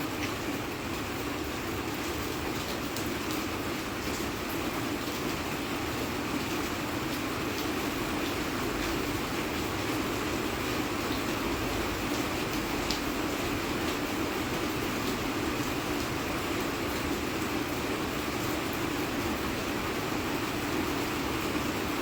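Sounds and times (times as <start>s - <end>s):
steady rain: 0.0s - 22.0s
faint raindrop ticks: 2.0s - 4.6s, 11.0s - 13.2s.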